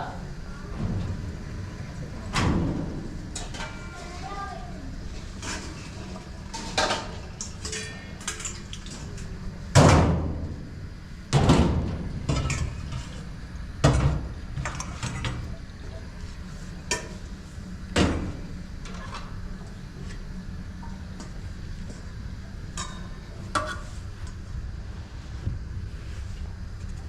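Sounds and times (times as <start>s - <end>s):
low steady hum: 0.0s - 27.0s.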